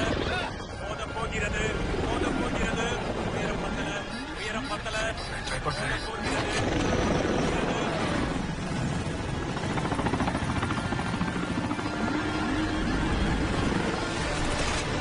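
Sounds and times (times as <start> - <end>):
helicopter engine noise: 0.0 - 15.0
helicopter rotor blades chopping: 0.0 - 15.0.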